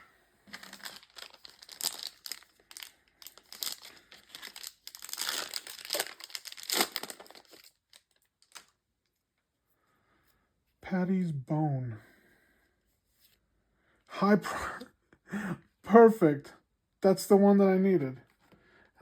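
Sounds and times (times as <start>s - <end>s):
plastic wrapper crinkling and tearing: 0.5s - 8.8s.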